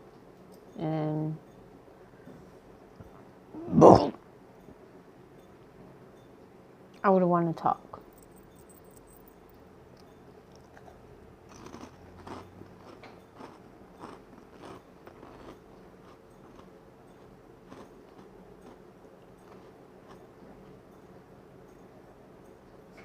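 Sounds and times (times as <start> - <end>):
chewing clicks: 8.2 - 20.3.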